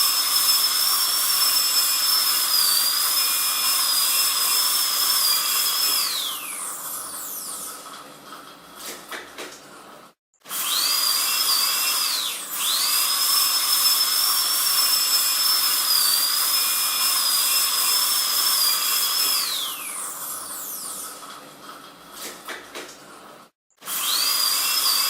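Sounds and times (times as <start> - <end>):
dentist's drill whining: 0.0 - 7.9, 10.5 - 21.2, 23.8 - 25.0.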